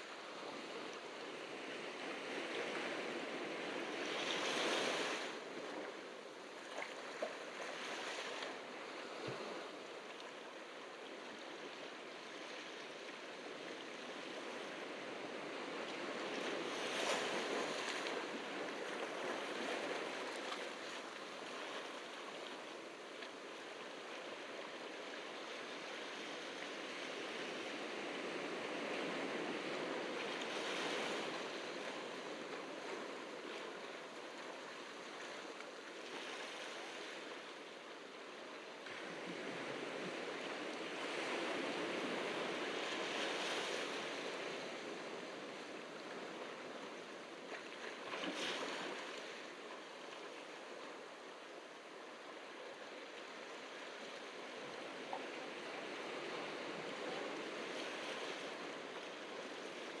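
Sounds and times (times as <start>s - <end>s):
ocean surf washing ashore: 0.0s - 5.9s, 38.9s - 47.4s.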